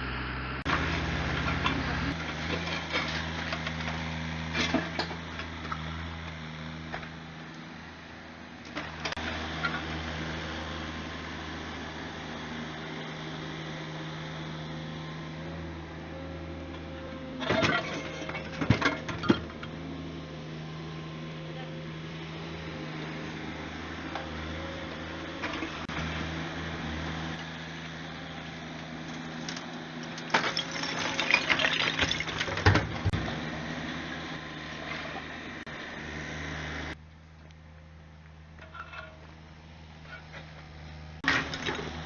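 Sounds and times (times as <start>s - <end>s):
excavator diesel engine running: 0.0s - 42.0s
rubble and metal clattering: 16.7s - 19.8s, 29.1s - 33.4s, 38.5s - 39.4s.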